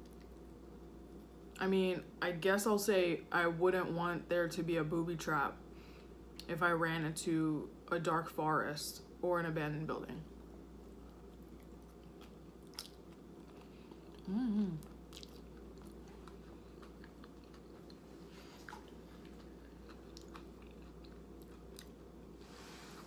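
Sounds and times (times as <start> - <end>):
person chewing crunchy chips: 10.8 - 22.2
person humming: 14.2 - 15.0.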